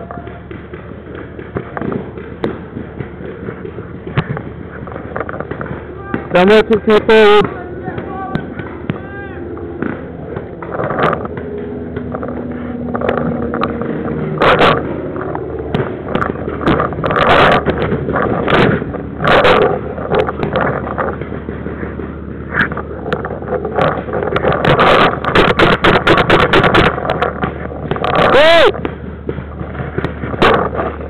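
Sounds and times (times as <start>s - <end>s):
paintball markers firing: 0.0s - 9.1s, 9.8s - 31.0s
wind on camera: 9.6s - 31.0s.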